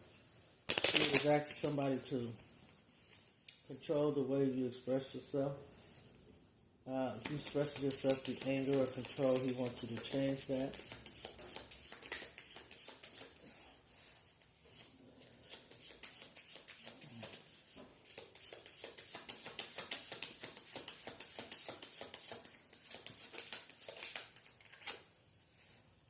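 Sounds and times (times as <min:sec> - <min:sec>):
cards being shuffled: 0:00.7 - 0:03.4, 0:07.2 - 0:13.4, 0:14.7 - 0:25.7.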